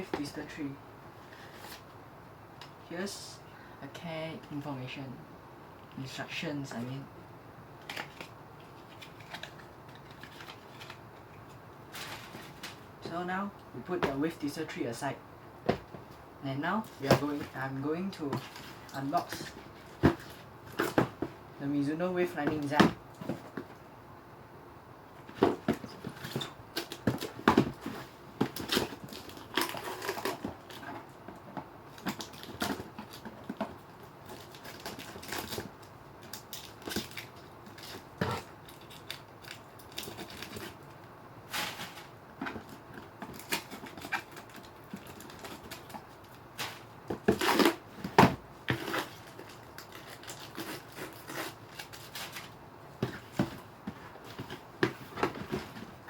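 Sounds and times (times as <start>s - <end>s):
cardboard box and packaging crinkling: 7.8s - 11.0s, 25.3s - 40.9s, 41.5s - 56.0s.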